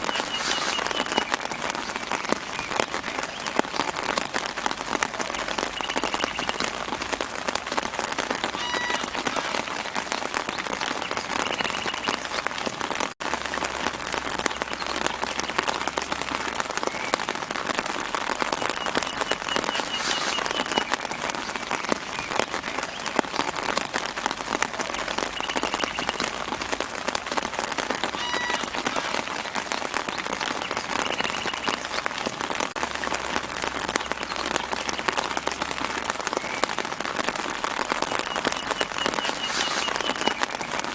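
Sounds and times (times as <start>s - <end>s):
small birds chirping: 0.0s - 4.2s, 5.2s - 6.9s, 8.6s - 12.6s, 18.5s - 23.7s, 24.8s - 26.5s, 28.1s - 32.2s, 38.0s - 40.8s
light rain on leaves: 0.0s - 40.9s.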